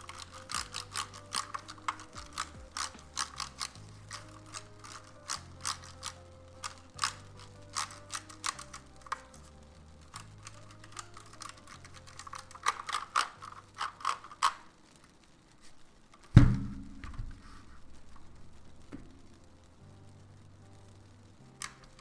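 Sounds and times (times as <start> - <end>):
mechanical keyboard keys clacking: 0.0 - 14.8, 21.4 - 22.0
loud low thump: 16.4 - 17.4.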